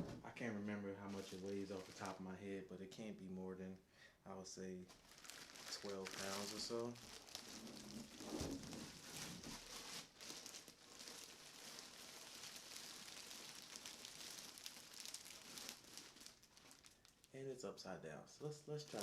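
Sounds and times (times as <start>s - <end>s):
plastic wrapping crinkling: 1.0s - 2.2s, 4.9s - 17.3s, 18.7s - 19.0s.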